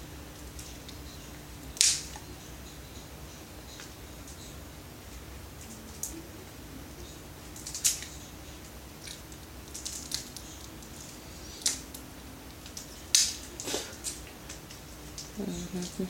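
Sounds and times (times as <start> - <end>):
packaging crackling and snapping: 9.0 - 15.4.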